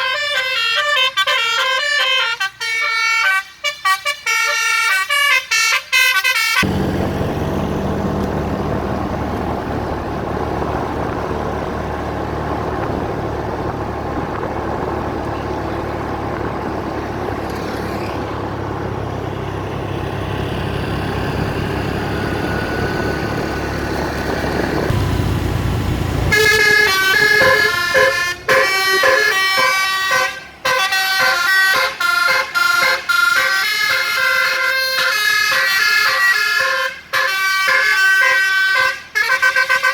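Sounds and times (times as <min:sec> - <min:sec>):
musical bus horn tune: 0:00.0 - 0:06.8, 0:24.8 - 0:39.9
engine and road noise: 0:00.0 - 0:39.9.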